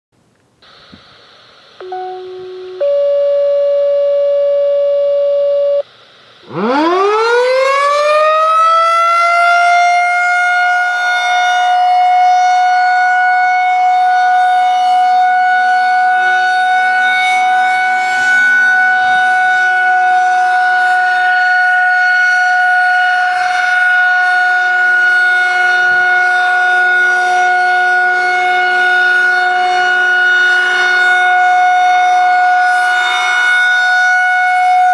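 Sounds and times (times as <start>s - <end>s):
electronic tones: 1.8s - 5.8s
outdoor warning siren wailing: 1.8s - 5.8s, 6.4s - 34.9s.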